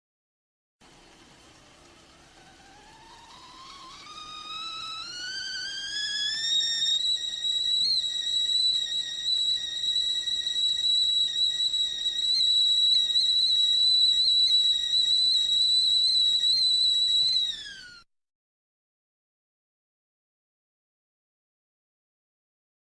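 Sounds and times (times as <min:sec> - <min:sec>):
stovetop kettle whistling: 0:00.8 - 0:18.1.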